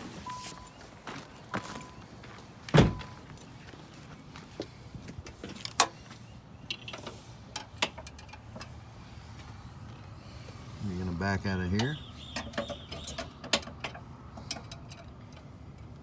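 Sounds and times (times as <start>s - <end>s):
engine idling hum: 0.0s - 16.0s
loud thump: 2.8s - 3.0s.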